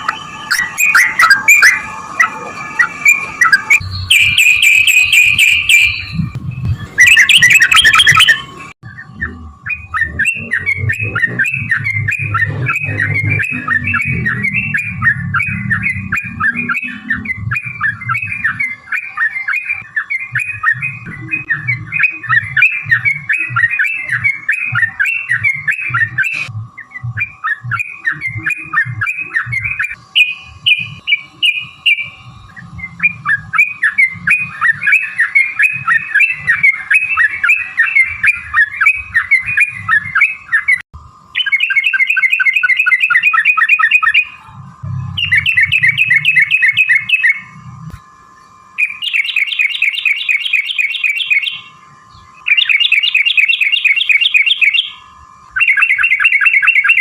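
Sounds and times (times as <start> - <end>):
bird singing chattering song: 0.5 - 47.6, 48.4 - 57.0.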